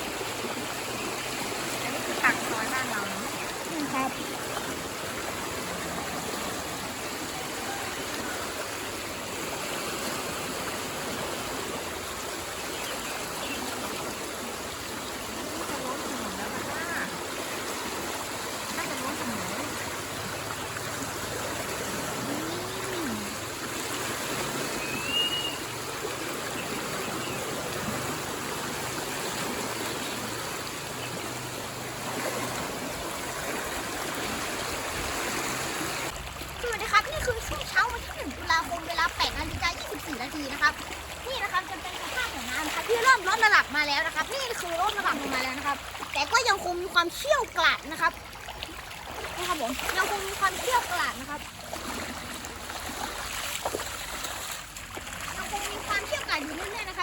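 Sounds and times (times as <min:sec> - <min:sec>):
floodwater rushing: 0:00.0 - 0:57.0
high chirp: 0:24.8 - 0:25.7.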